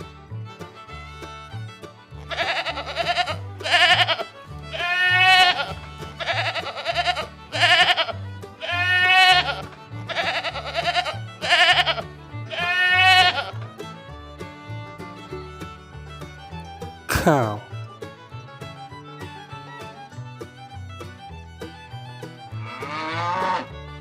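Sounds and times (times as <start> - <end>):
background music with bass line: 0.0 - 24.0
sheep bleating: 2.2 - 13.6, 22.6 - 23.8.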